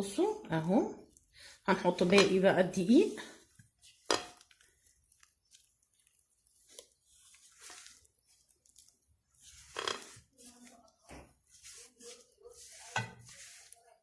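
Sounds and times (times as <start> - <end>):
soft rustling: 3.0 - 14.0
faint scrapes and ticks: 3.6 - 14.0.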